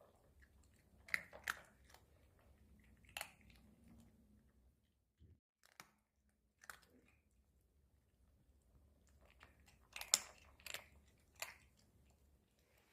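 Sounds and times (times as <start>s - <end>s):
chewing crunchy food: 0.0s - 4.2s, 8.9s - 12.9s.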